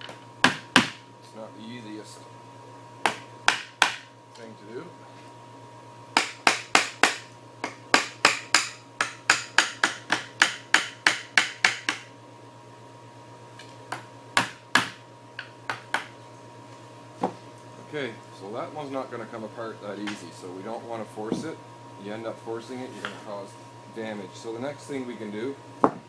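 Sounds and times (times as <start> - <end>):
hammer tapping on wood: 3.0 - 4.0, 6.2 - 12.1, 13.9 - 16.1.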